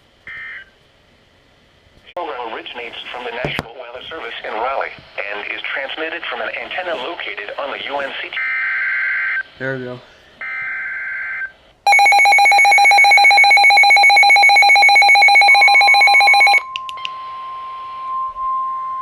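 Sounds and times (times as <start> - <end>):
rapidly pulsing alarm beep: 10.4 - 18.7
steady warning alarm tone: 10.4 - 19.0.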